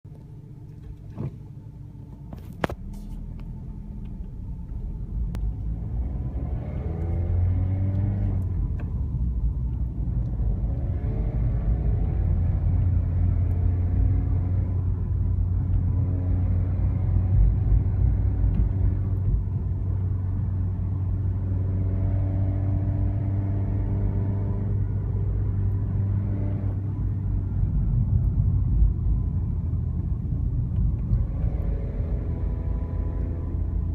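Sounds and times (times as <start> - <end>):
car engine accelerating: 0.1 - 33.9.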